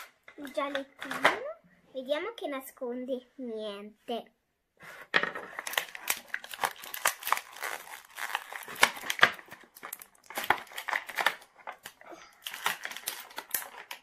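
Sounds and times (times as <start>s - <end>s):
packaging crinkling: 5.4s - 14.0s.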